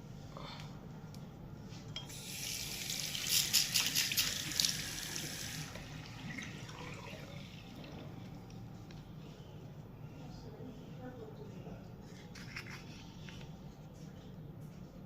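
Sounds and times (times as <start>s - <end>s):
tap water running into sink: 2.1s - 8.1s.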